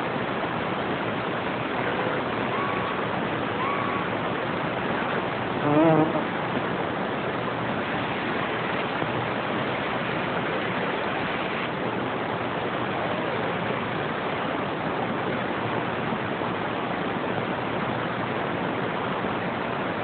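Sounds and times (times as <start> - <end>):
radio static hiss: 5.5 - 6.5.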